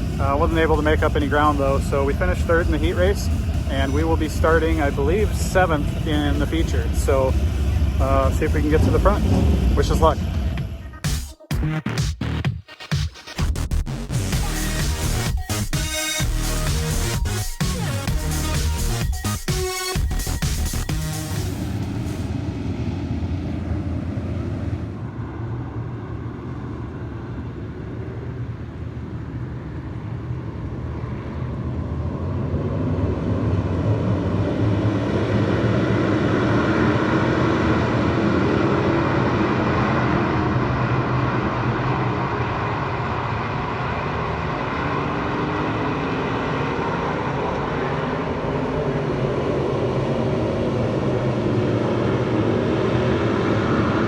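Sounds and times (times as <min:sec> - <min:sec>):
race car engines running hard: 0:00.0 - 0:11.0, 0:23.2 - 0:54.0.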